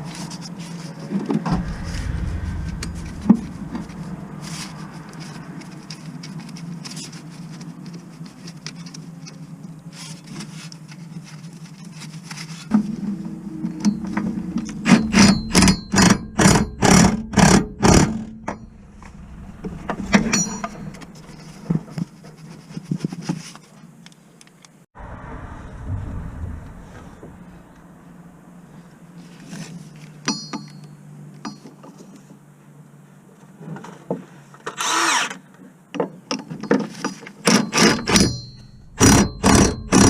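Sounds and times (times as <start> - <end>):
steady low hum: 1.5 - 5.7, 18.2 - 22.2, 38.4 - 40.0.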